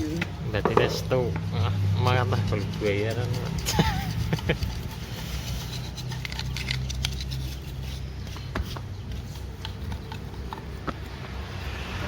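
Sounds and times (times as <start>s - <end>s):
tool scraping metal part: 2.0s - 11.0s.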